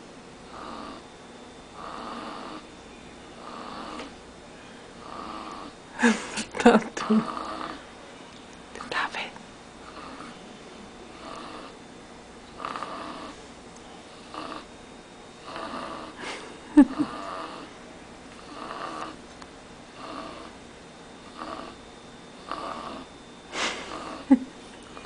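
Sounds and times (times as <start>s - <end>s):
dog snoring: 0.4s - 1.1s, 1.7s - 2.7s, 3.4s - 4.2s, 5.0s - 5.8s, 7.0s - 7.8s, 9.8s - 10.4s, 11.1s - 11.8s, 12.5s - 13.4s, 14.1s - 14.7s, 15.4s - 17.7s, 18.4s - 19.2s, 19.9s - 20.6s, 21.2s - 21.8s, 22.4s - 24.4s.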